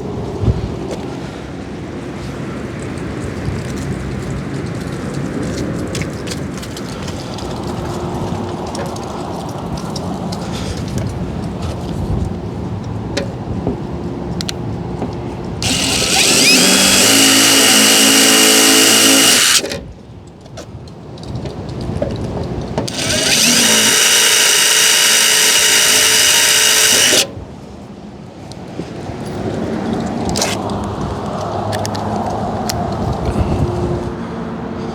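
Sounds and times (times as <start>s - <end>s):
power drill whining: 15.6s - 19.8s, 22.9s - 27.4s.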